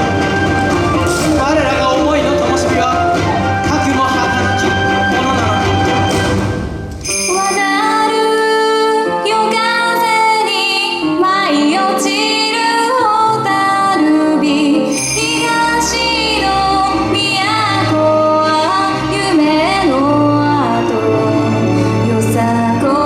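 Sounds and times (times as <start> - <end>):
low bass: 0.0 - 7.0
dance music: 0.0 - 7.8
woman singing: 7.2 - 23.0.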